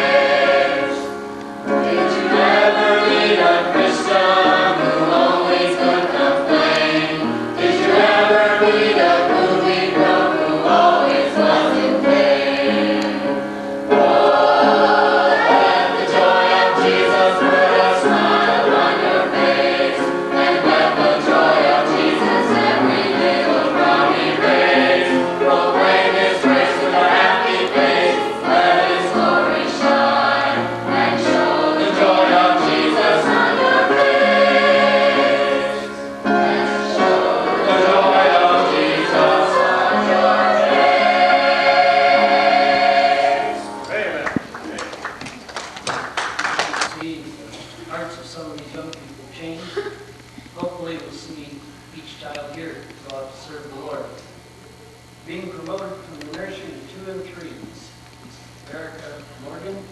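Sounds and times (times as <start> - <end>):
group singing gospel song: 0.0 - 44.5.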